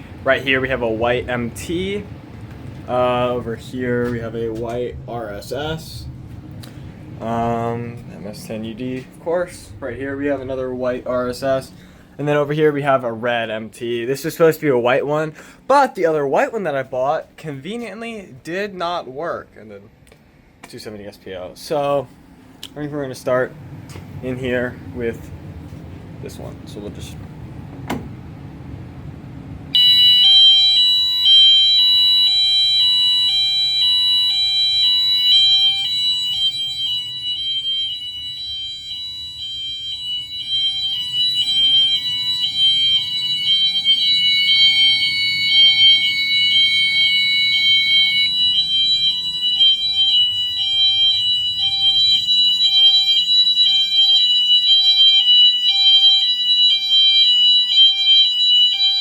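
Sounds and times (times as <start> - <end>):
fire alarm horns hi-lo tone: 0.0 - 18.8, 29.7 - 59.0.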